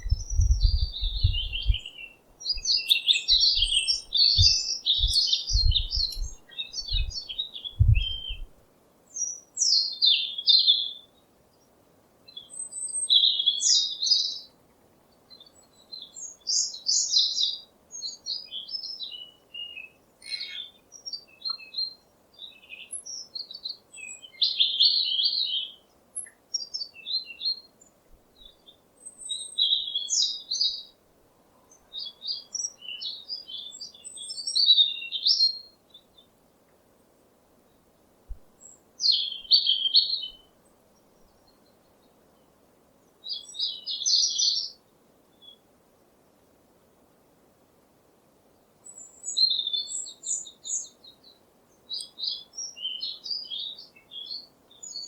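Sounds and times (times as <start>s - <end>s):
low thumps: 0.0s - 1.8s, 4.4s - 7.2s, 7.8s - 8.5s
birds chirping: 0.0s - 8.5s.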